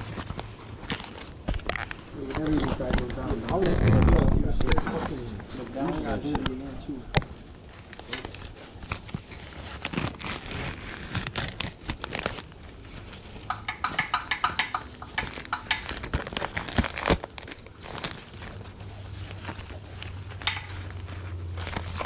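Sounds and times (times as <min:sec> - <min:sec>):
rags rustling and crinkling: 0:00.0 - 0:22.0
small clicks and knocks: 0:13.4 - 0:16.4, 0:20.4 - 0:21.0.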